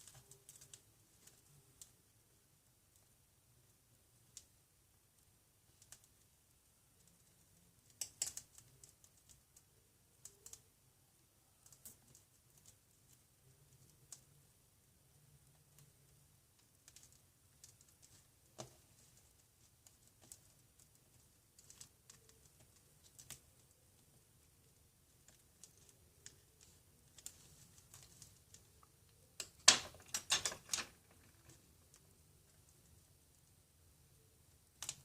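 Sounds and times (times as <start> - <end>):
small tools clicking and tapping: 7.9 - 9.4, 25.3 - 32.0.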